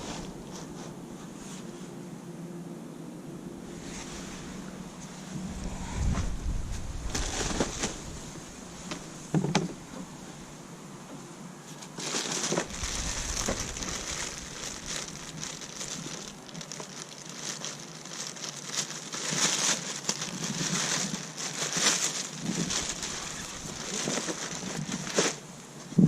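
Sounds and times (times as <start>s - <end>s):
handling noise rustling and clicks: 11.7s - 25.4s.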